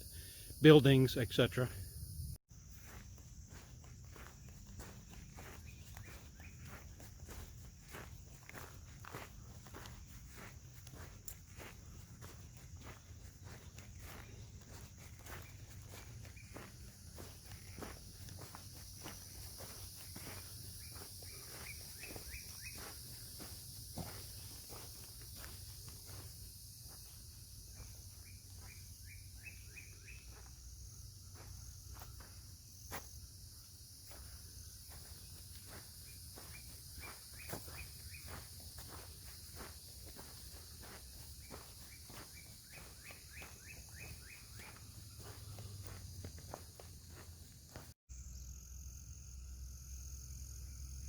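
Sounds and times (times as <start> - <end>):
insect drone: 0.0 - 51.0
footsteps on dirt trail: 2.5 - 48.0.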